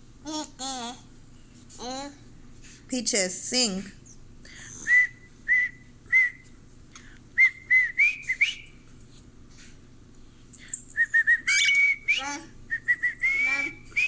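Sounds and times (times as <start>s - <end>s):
cockatiel whistling: 11.0s - 14.0s.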